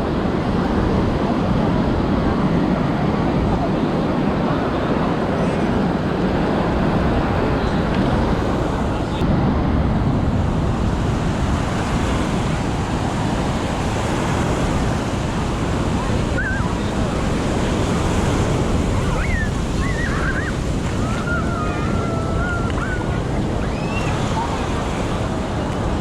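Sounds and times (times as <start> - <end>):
ocean surf washing onto beach: 0.0 - 26.0
wind buffeting microphone: 0.0 - 26.0.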